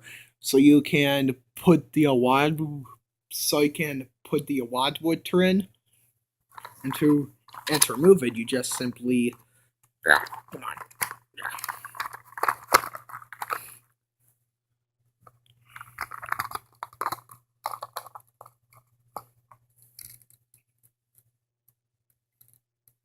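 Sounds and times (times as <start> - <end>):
plastic toy parts clicking: 6.6 - 9.4, 10.1 - 13.8, 15.8 - 19.3, 20.0 - 20.4.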